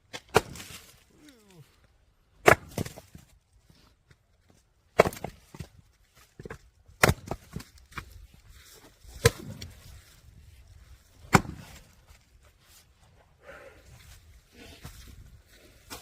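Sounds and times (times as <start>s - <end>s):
axe strikes splitting wood: 0.1s - 1.0s, 2.4s - 3.3s, 4.9s - 5.7s, 6.4s - 8.0s, 9.1s - 9.9s, 11.2s - 11.9s.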